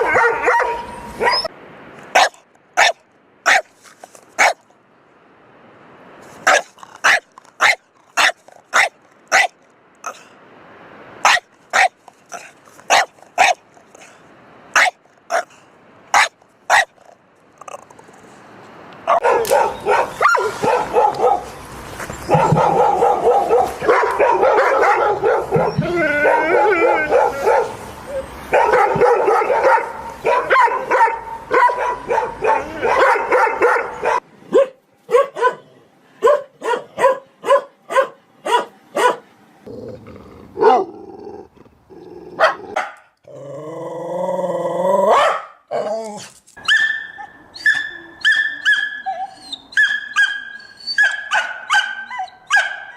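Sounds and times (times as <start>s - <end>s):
dogs barking in chorus: 0.0s - 1.5s, 2.2s - 3.7s, 4.4s - 4.6s, 6.4s - 10.2s, 11.2s - 14.1s, 14.8s - 17.2s, 19.0s - 21.6s, 22.2s - 39.2s, 40.5s - 41.0s, 42.3s - 43.1s, 45.1s - 45.9s, 51.0s - 52.9s
dog barking sharply: 2.2s - 3.7s, 4.4s - 4.6s, 6.5s - 10.2s, 11.2s - 13.6s, 14.8s - 15.5s, 16.2s - 17.0s, 19.1s - 21.5s, 22.3s - 25.7s, 28.5s - 35.6s, 36.2s - 39.2s, 45.1s - 45.6s
dog howling cry: 25.1s - 27.6s.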